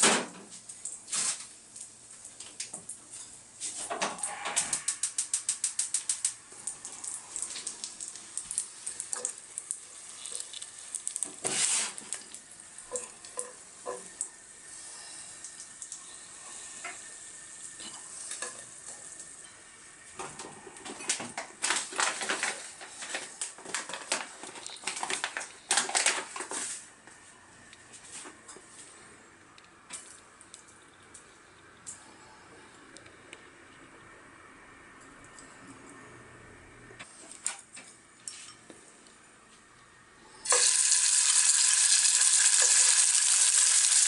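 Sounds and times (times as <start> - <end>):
food sizzling in a frying pan: 7.7 - 15.0, 40.4 - 44.0
utensil scraping a pan: 11.4 - 12.1.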